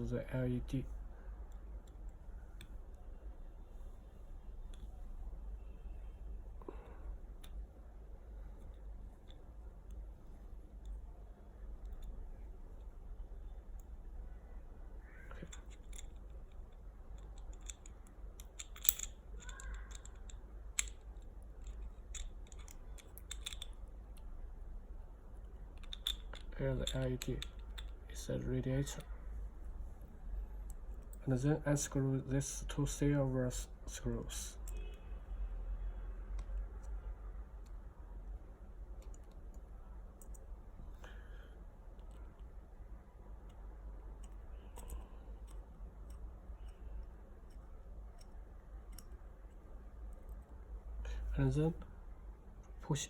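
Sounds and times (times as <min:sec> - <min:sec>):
low steady hum: 0:00.0 - 0:53.0
small metal clicks of parts handled: 0:11.7 - 0:14.0, 0:15.2 - 0:24.3, 0:25.4 - 0:28.2, 0:34.6 - 0:35.0, 0:39.0 - 0:39.6, 0:40.2 - 0:40.5, 0:44.2 - 0:50.5
screwdriver clicks: 0:17.2 - 0:21.0.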